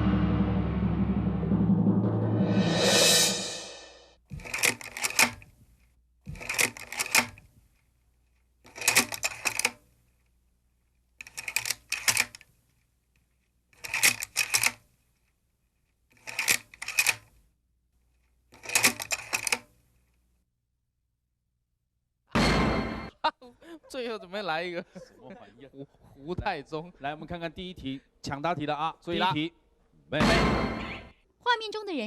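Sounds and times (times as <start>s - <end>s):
rapid mechanical clicking: 4.3s - 5.6s, 6.3s - 9.9s, 11.2s - 12.5s, 13.8s - 14.8s, 16.2s - 17.3s, 18.6s - 19.7s.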